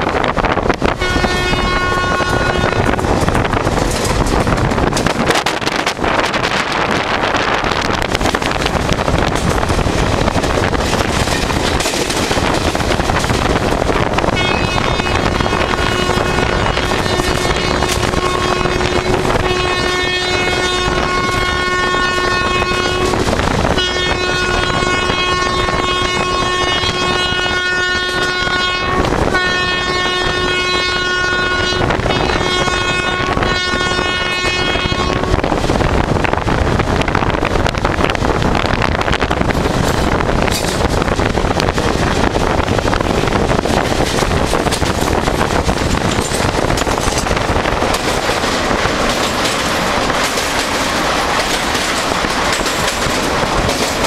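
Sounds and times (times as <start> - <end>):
rushing air: 0.0 - 24.1, 33.3 - 54.0
train wheels on rails: 0.0 - 54.0
locomotive horn blasts: 0.8 - 3.0, 14.2 - 35.5.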